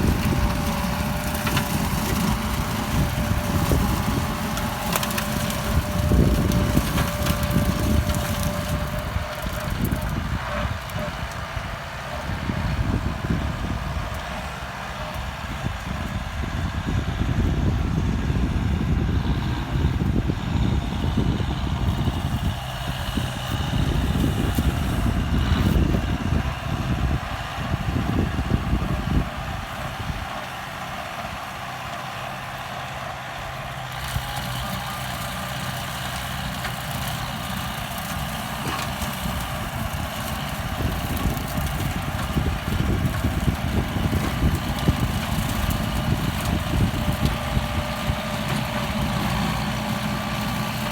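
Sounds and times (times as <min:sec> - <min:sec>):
rotary tiller rattling: 0:00.0 - 0:11.2, 0:33.8 - 0:50.9
tractor diesel engine rumbling: 0:00.0 - 0:50.9.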